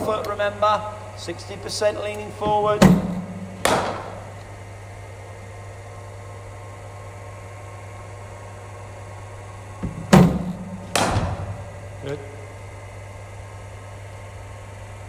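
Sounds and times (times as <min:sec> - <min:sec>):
bowling machine humming: 0:00.0 - 0:15.0
bat hitting ball: 0:02.8 - 0:04.4, 0:09.8 - 0:11.7.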